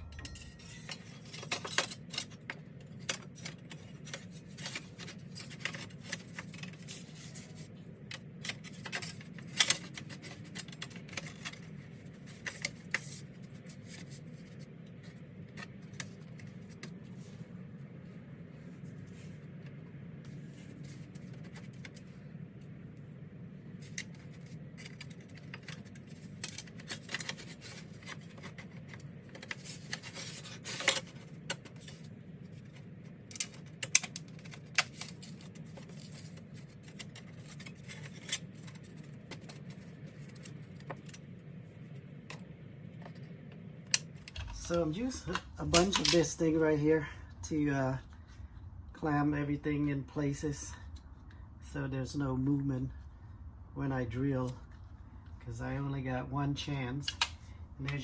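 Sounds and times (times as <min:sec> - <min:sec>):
metal parts clinking: 0:00.0 - 0:02.4
steady low hum: 0:00.0 - 0:58.0.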